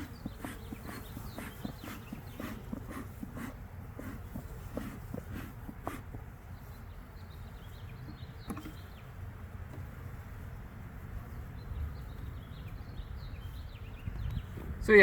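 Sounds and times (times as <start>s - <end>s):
honey bees buzzing: 0.0s - 11.8s.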